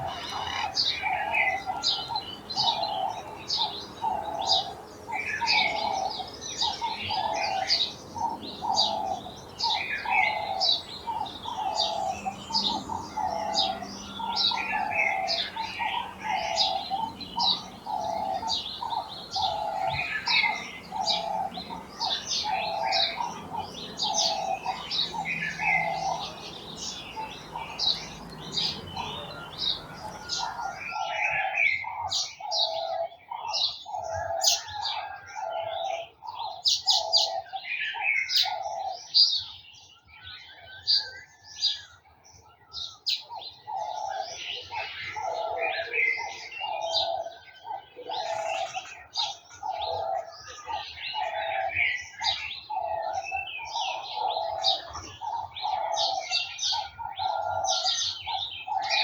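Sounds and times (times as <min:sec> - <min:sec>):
bird repeating low note: 0:00.0 - 0:31.5
birds chirping rapidly: 0:00.0 - 0:59.0.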